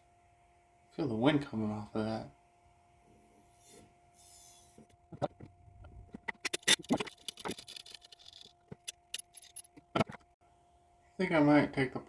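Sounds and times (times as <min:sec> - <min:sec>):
faint steady hum: 0:00.0 - 0:12.0
clicks and knocks on metal parts: 0:06.1 - 0:10.2.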